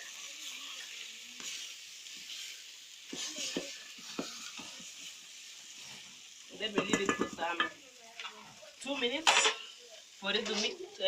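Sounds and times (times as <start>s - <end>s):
food sizzling in a pot: 0.0s - 11.0s
spoon knocking against pot: 6.7s - 7.8s.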